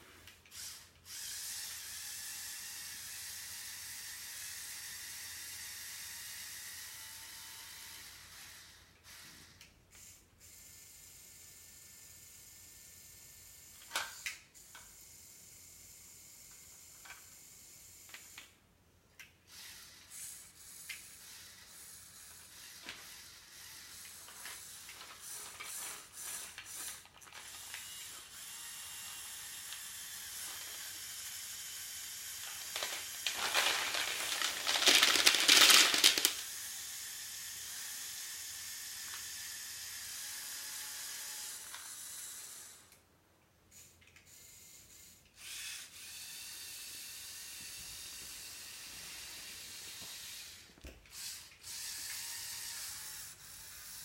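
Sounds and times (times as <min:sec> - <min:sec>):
plastic gears clicking: 0:29.6 - 0:36.7.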